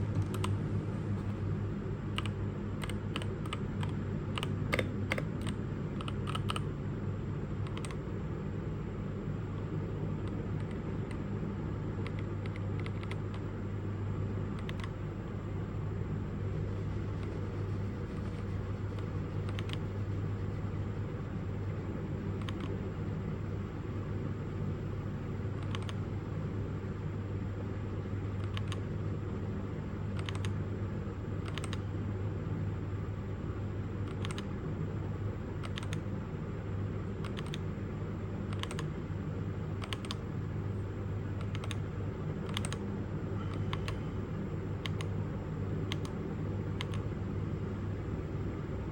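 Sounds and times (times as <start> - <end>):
steady low hum: 0.0 - 48.9
mechanical keyboard keystrokes: 2.1 - 6.7, 7.6 - 8.0, 12.0 - 13.5, 19.0 - 19.9, 22.4 - 22.8, 25.6 - 26.0, 28.4 - 28.8, 30.1 - 30.6, 31.4 - 31.8, 34.0 - 34.5, 35.6 - 36.0, 37.2 - 37.6, 38.5 - 38.9, 39.8 - 40.2, 41.4 - 41.8, 42.4 - 42.8.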